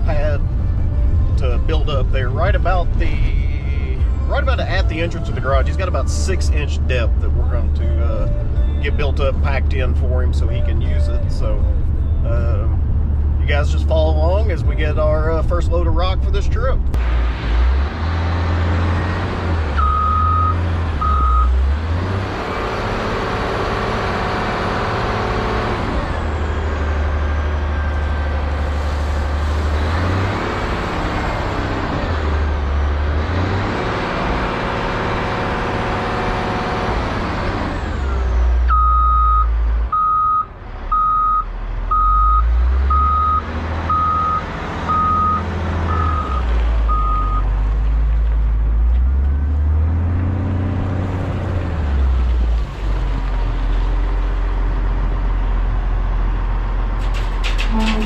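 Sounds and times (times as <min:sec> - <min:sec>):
heavy diesel equipment running: 0:00.0 - 0:58.0
reversing alarm beeping: 0:19.8 - 0:21.6, 0:38.7 - 0:47.5.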